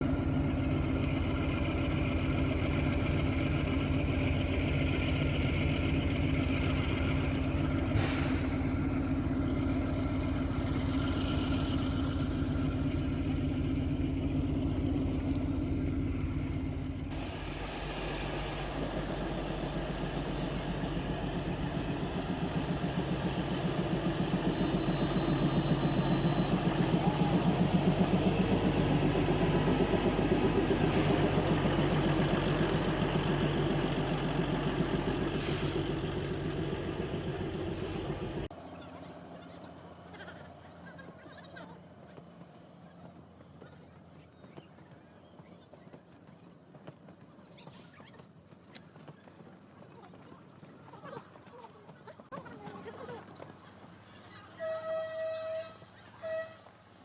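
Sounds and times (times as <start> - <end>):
diesel locomotive engine throbbing: 0.0 - 40.2.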